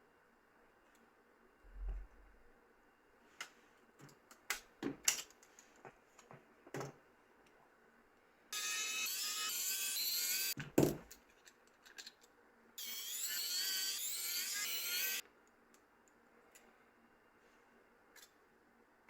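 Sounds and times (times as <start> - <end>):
high-speed tool motor whine: 8.6 - 10.6, 12.8 - 15.2.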